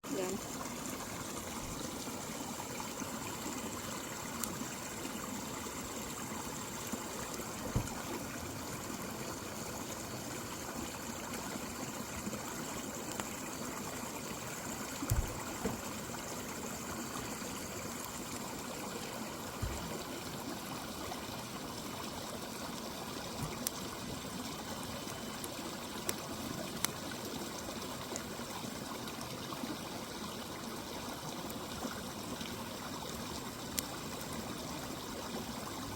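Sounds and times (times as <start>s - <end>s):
river flowing: 0.1s - 35.9s
campfire crackling: 0.6s - 29.3s, 31.4s - 35.6s.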